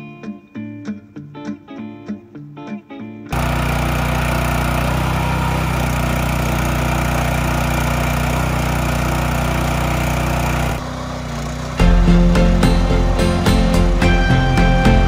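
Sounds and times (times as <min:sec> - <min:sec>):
small gasoline engine running: 0:03.3 - 0:15.0.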